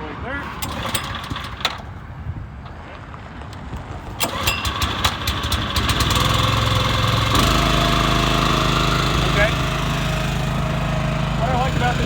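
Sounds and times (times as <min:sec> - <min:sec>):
small gasoline engine starting: 0:00.4 - 0:02.0, 0:04.1 - 0:12.0.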